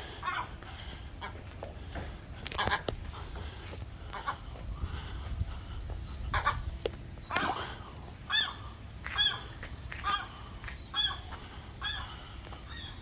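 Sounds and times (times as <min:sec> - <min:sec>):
gull alarm calls: 0:00.0 - 0:01.5, 0:06.2 - 0:13.0.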